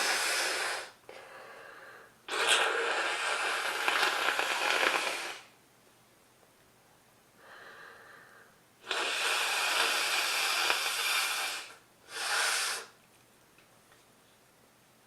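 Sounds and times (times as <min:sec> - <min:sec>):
person blowing nose: 0:00.0 - 0:01.0, 0:02.3 - 0:05.5, 0:08.8 - 0:13.0
faint breath: 0:00.0 - 0:03.0, 0:07.4 - 0:09.9.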